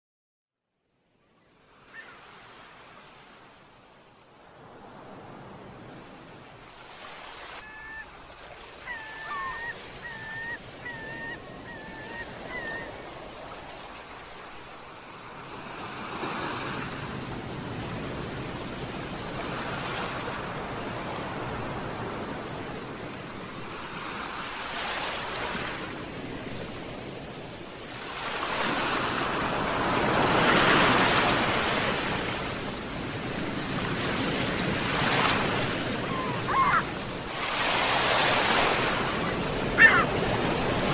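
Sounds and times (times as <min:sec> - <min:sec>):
sea waves breaking on shore: 0:01.6 - 0:40.9
gull crying: 0:07.6 - 0:08.1, 0:08.9 - 0:13.0, 0:36.0 - 0:37.0, 0:39.8 - 0:40.2.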